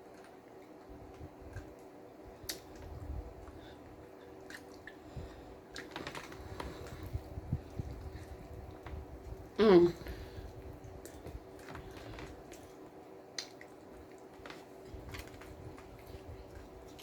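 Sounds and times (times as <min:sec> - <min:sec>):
person chewing crunchy sandwich: 0:10.4 - 0:17.0.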